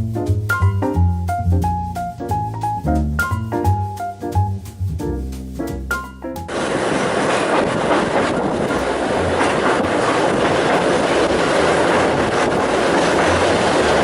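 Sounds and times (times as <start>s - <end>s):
train wheels rumbling on rails: 6.5s - 14.0s.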